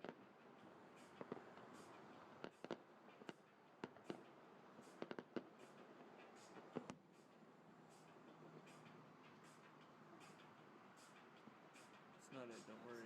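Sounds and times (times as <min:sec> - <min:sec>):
fireworks popping and banging: 0:00.0 - 0:07.3
faint background hiss: 0:00.0 - 0:13.0.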